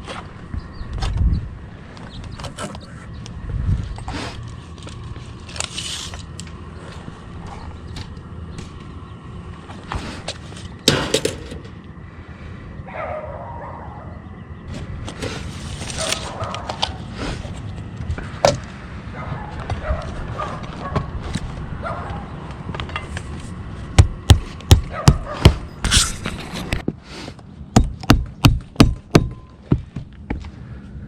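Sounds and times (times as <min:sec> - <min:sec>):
scraping and handling noise: 0:04.0 - 0:08.9, 0:09.6 - 0:11.8, 0:14.7 - 0:18.7, 0:25.4 - 0:27.4
hammer blows: 0:23.9 - 0:26.2, 0:27.8 - 0:30.1.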